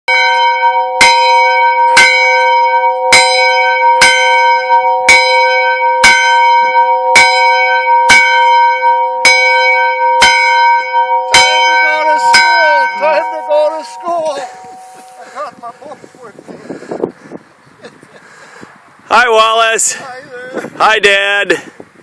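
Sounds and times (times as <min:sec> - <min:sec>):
cracked school bell ringing: 0:00.1 - 0:15.5.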